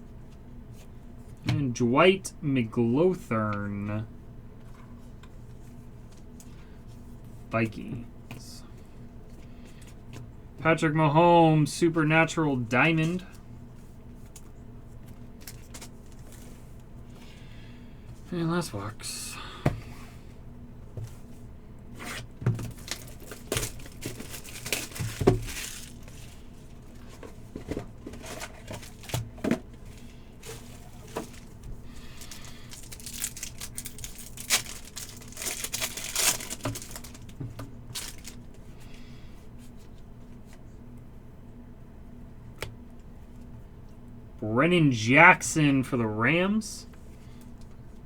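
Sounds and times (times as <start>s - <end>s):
wrappers crinkling and ripping: 22.6s - 27.0s, 28.2s - 38.6s
packaging tearing: 22.7s - 26.4s, 30.4s - 38.4s.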